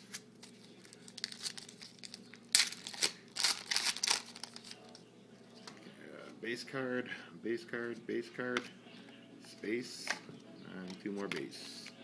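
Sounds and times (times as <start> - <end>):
wrapper crinkling and tearing: 0.0 - 4.8.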